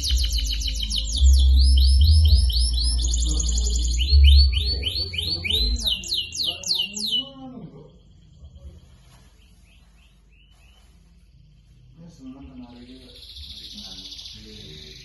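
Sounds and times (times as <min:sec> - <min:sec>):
low rumble: 0:00.0 - 0:06.3
canary singing trills: 0:00.0 - 0:15.0.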